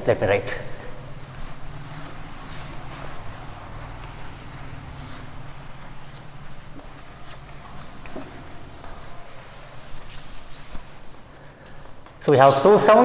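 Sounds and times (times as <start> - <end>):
scratchy writing strokes on a board: 0.0 - 11.3.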